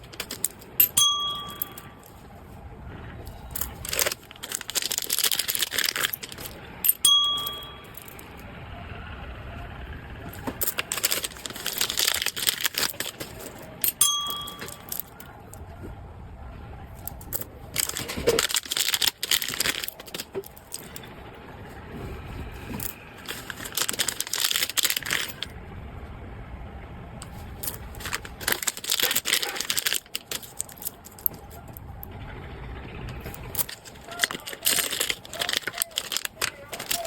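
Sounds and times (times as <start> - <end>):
packaging crinkling and rustling: 0.0 - 0.8, 3.3 - 6.9, 10.3 - 15.3, 17.0 - 21.1, 22.5 - 25.5, 27.2 - 31.9, 33.2 - 37.0
low steady rumble: 0.0 - 37.0.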